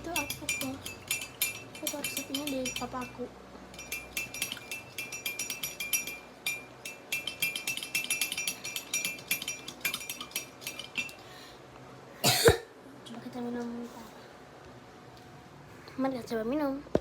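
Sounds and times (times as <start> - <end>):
spoon clinking in a glass: 0.0 - 11.2.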